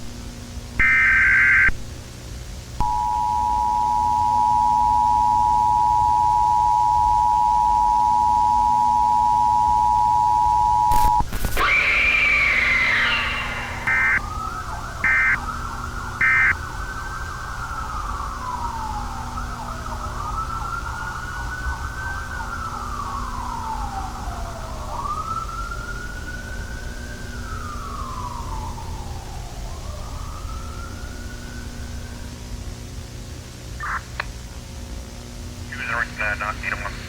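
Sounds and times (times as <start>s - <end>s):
steady low hum: 0.0s - 37.0s
wailing siren: 0.8s - 1.7s, 2.8s - 32.3s.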